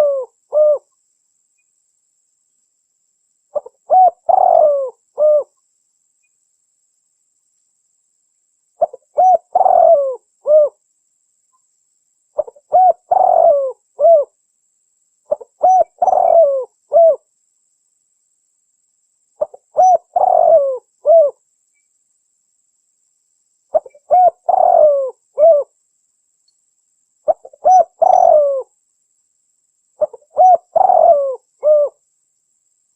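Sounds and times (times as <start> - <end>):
dove cooing: 0.0 - 0.9, 3.6 - 5.5, 8.8 - 10.8, 12.4 - 14.3, 15.3 - 17.2, 19.4 - 21.4, 23.7 - 25.7, 27.3 - 28.7, 30.0 - 32.0.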